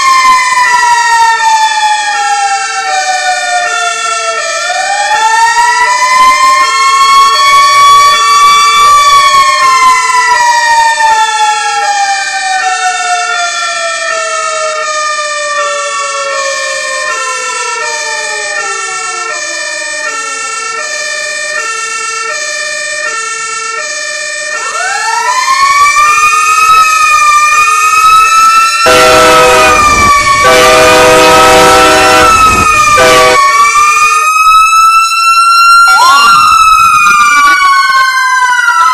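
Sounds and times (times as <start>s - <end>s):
siren winding up and wavering: 0.0s - 38.9s
two-tone hi-lo siren: 0.0s - 38.9s
wailing siren: 0.0s - 38.9s
loud horn blast: 28.8s - 33.5s.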